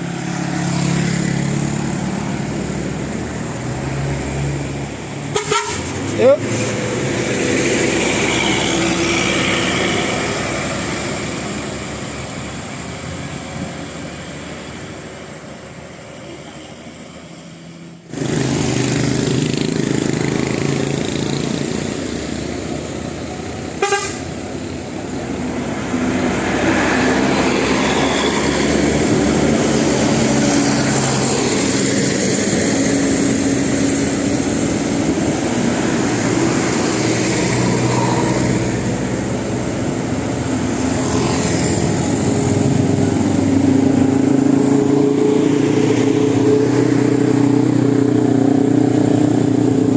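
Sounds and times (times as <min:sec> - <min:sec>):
bus engines climbing: 0:00.0 - 0:49.9
musical bus horns: 0:05.3 - 0:06.1, 0:23.7 - 0:24.4.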